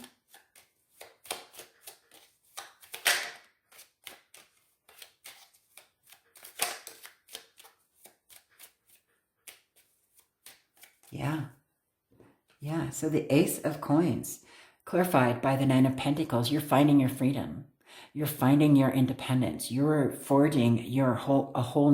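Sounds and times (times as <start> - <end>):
cards being shuffled: 0.0 - 11.2.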